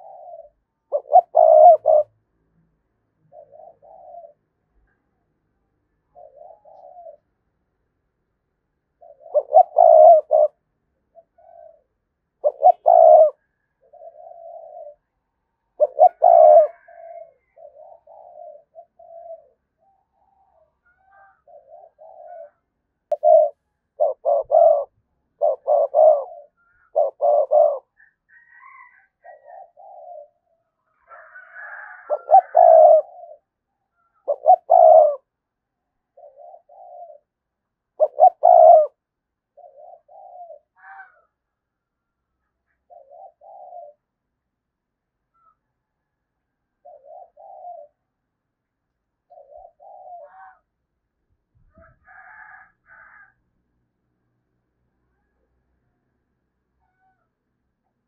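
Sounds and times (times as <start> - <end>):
dove cooing: 0.0 - 2.2, 3.3 - 4.5, 6.1 - 7.4, 8.9 - 35.4, 36.1 - 41.4, 42.4 - 44.1, 45.3 - 46.1, 46.7 - 48.2, 49.2 - 50.7, 51.7 - 53.4, 56.8 - 57.3.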